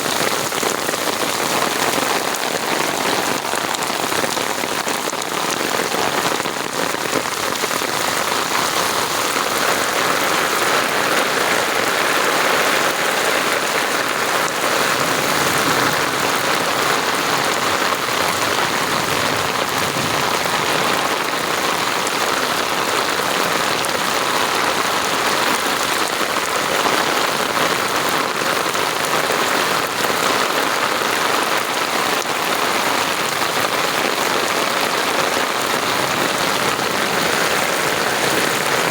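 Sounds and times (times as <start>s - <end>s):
heavy rain pattering: 0.0s - 38.9s.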